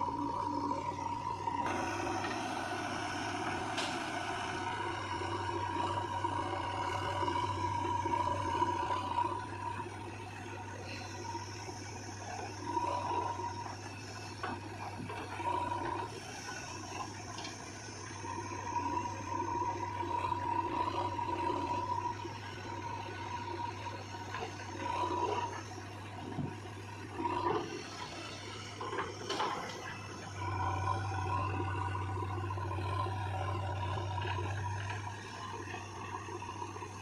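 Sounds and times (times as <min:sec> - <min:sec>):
backhoe diesel engine running: 0:00.0 - 0:37.0.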